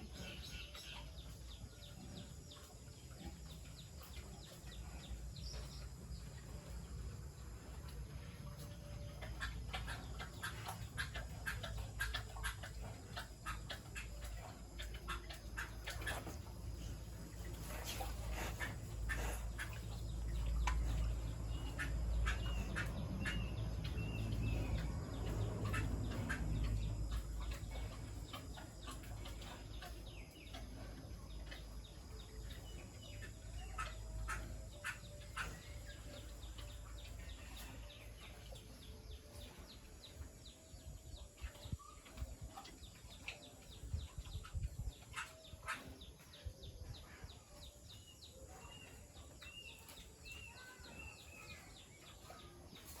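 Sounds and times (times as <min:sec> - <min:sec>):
birds chirping: 0:00.0 - 0:53.0.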